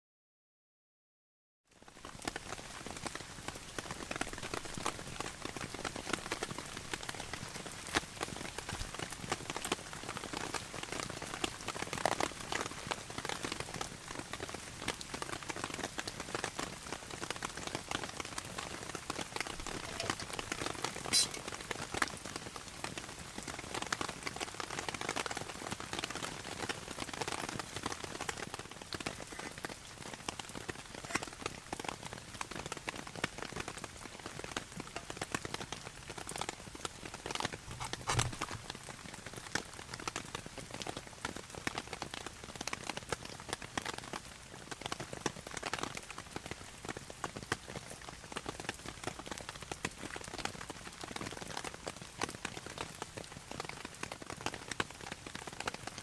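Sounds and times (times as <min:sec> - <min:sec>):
heavy rain on a tarp: 0:01.7 - 0:20.5, 0:21.8 - 0:56.0.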